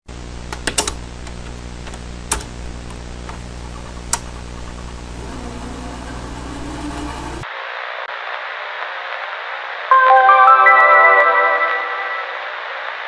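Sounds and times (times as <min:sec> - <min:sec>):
steady low hum: 0:00.1 - 0:07.4
sharp clicks: 0:00.5 - 0:05.7.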